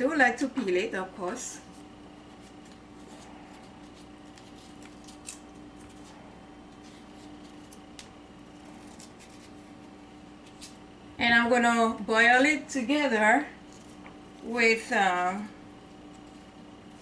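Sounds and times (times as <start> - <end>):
low electrical hum: 0.0 - 17.0
knife scraping a squash: 8.6 - 10.8.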